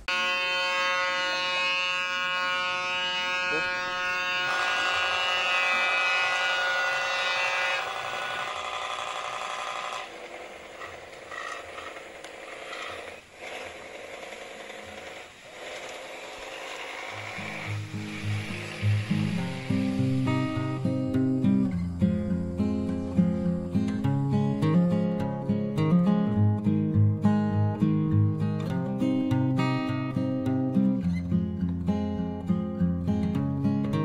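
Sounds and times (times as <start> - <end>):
toy steam boat engine buzzing: 0.0 - 21.9.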